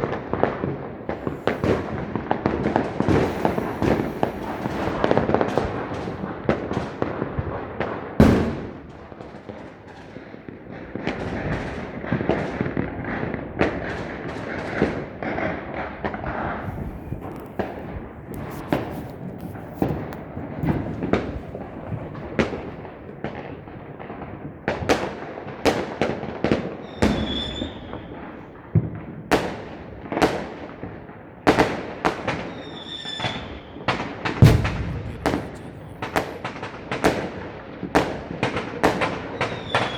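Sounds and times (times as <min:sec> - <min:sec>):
fireworks bangs and crackling: 0:00.0 - 0:39.9
firework whistles: 0:01.1 - 0:06.1, 0:26.8 - 0:28.2, 0:32.5 - 0:36.5, 0:39.4 - 0:39.9.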